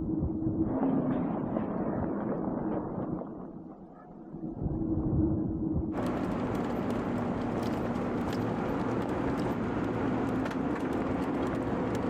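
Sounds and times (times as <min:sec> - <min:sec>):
road noise: 0:06.0 - 0:12.0
truck engine running: 0:06.0 - 0:12.0.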